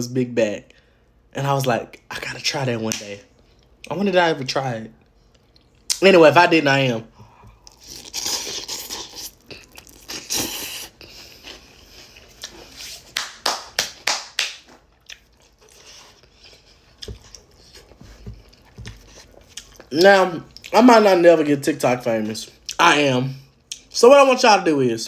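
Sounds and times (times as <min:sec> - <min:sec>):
crunchy chewing: 0:07.6 - 0:12.9, 0:14.9 - 0:20.7.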